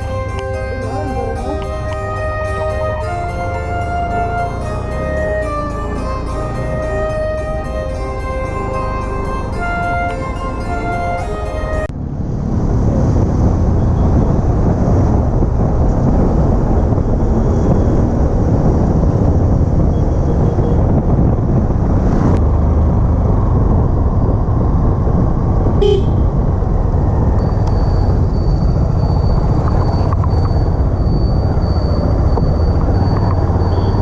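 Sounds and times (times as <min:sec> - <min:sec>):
vehicle road noise: 0:00.0 - 0:34.0
short horn toot: 0:25.8 - 0:26.3.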